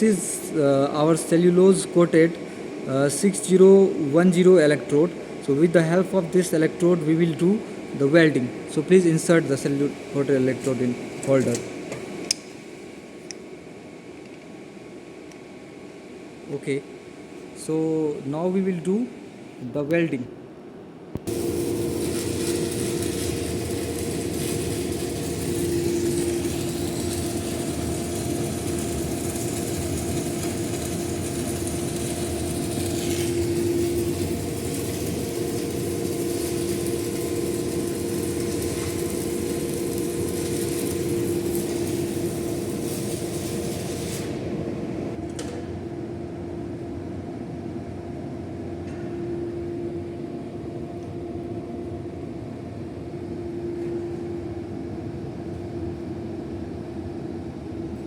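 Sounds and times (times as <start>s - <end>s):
constant hum: 0.0s - 58.0s
welding arc hissing: 21.2s - 45.2s.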